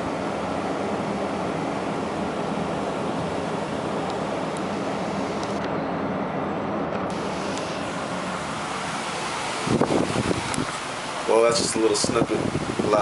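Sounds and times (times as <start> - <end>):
rushing wind: 0.0 - 13.0
ship engine hum: 0.0 - 13.0.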